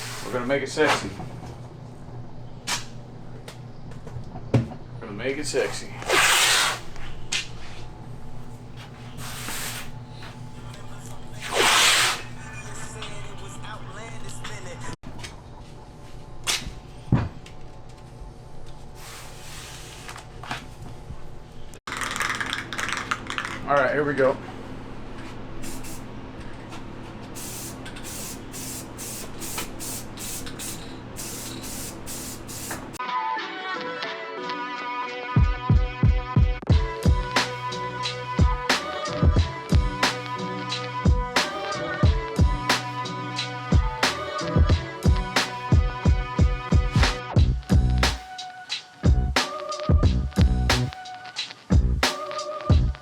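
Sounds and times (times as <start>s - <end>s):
spray paint can hissing: 6.1s - 6.9s, 9.2s - 9.9s, 11.4s - 12.3s, 25.6s - 26.0s, 27.4s - 32.9s
music: 9.9s - 15.0s, 33.0s - 53.0s.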